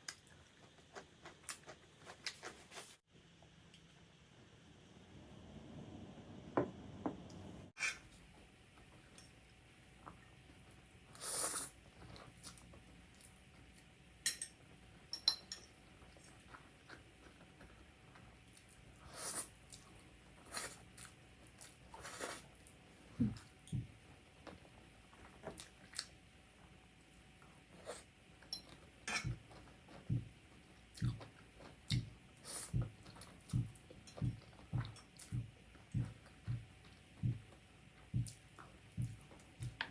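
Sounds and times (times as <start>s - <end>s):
soft chewing thuds: 29.2s - 39.9s.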